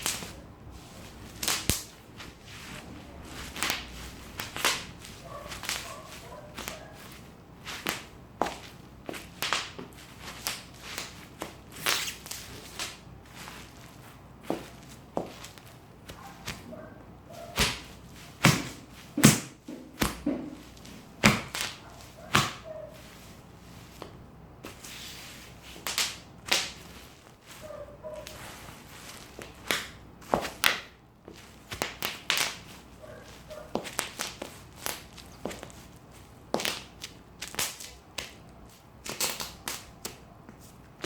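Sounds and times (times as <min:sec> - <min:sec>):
bubble wrap popping: 0:01.2 - 0:07.1, 0:17.5 - 0:23.1, 0:28.3 - 0:35.8.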